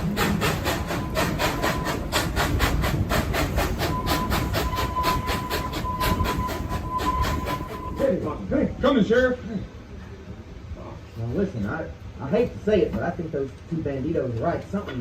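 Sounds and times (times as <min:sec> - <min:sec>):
steam locomotive chuffing: 0:00.0 - 0:08.5.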